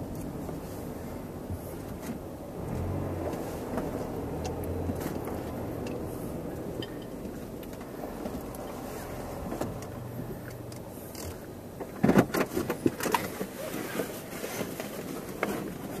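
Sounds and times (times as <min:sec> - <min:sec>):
car cabin hum: 0:00.0 - 0:13.8.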